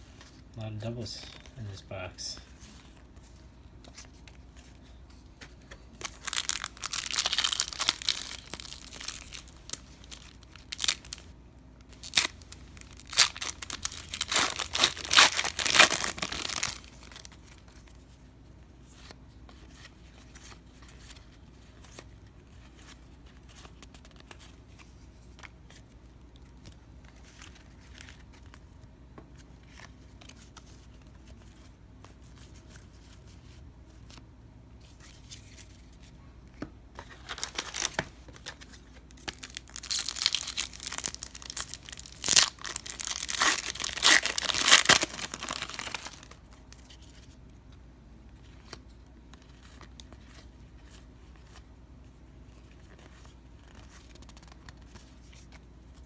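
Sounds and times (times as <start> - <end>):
card pack wrapper crinkling: 6.0 - 17.9, 37.0 - 47.4.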